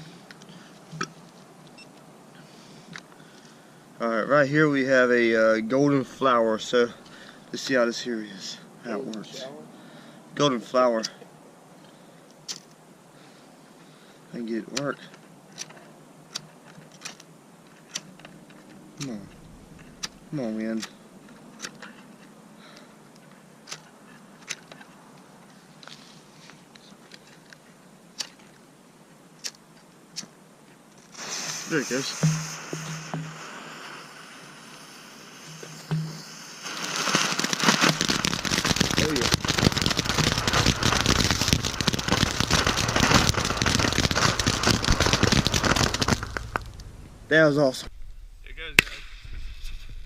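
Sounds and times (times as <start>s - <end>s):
firework fountain crackling and hissing: 31.0s - 47.9s.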